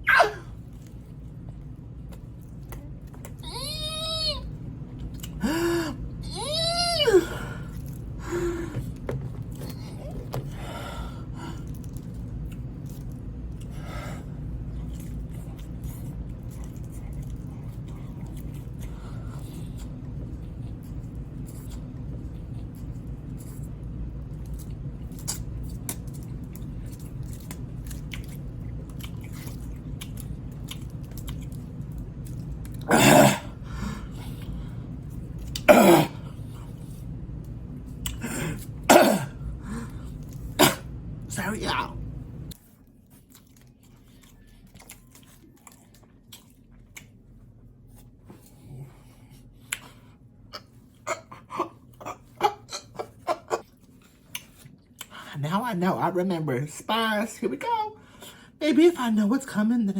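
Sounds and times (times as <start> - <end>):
person chewing food: 0.0 - 41.2, 42.1 - 55.3
steady low hum: 0.0 - 59.9
person coughing: 32.9 - 33.6, 35.7 - 36.2, 38.2 - 39.4, 40.6 - 40.9.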